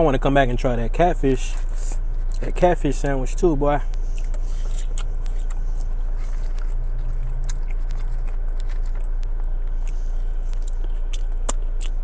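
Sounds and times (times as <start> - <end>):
steady low hum: 0.0 - 12.0
person chewing food: 3.8 - 12.0.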